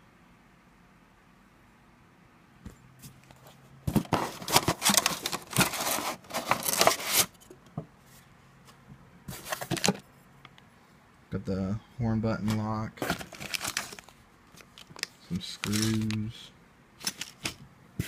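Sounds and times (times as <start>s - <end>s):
packaging crinkling and tearing: 4.0s - 7.3s, 13.0s - 16.4s.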